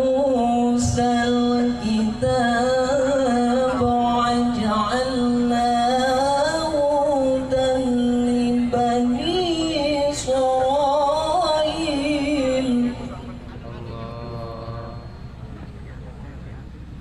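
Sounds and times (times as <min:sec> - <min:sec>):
man chanting: 0:10.1 - 0:15.3.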